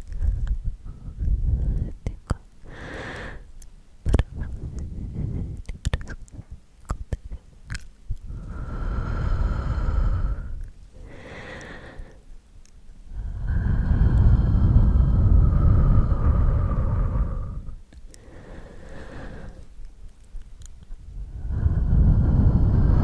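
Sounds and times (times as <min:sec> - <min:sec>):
mouth clicks: 0:01.2 - 0:09.0
rubbing on microphone: 0:04.2 - 0:06.6
breathy sounds: 0:08.3 - 0:12.3, 0:13.1 - 0:19.8, 0:21.0 - 0:23.0.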